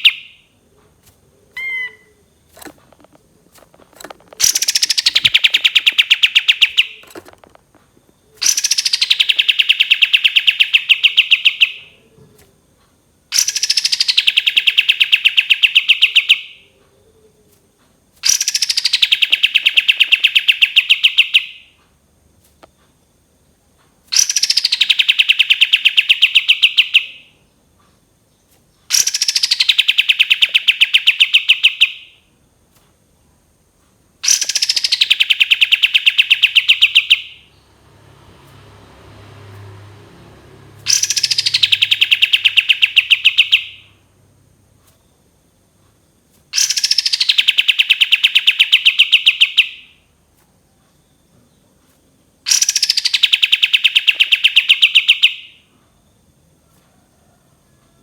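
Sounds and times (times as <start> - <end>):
bulbul singing rapid trill: 1.6 - 2.7, 4.4 - 7.2, 8.4 - 11.8, 34.2 - 38.2, 40.6 - 44.0.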